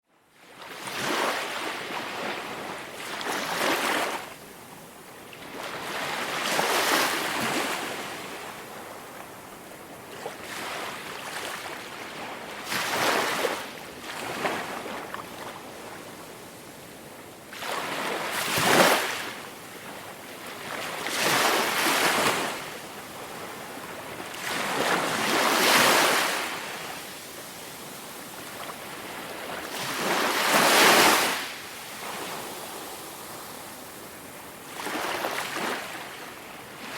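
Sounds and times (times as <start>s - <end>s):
ocean waves breaking on shore: 17.5s - 36.9s.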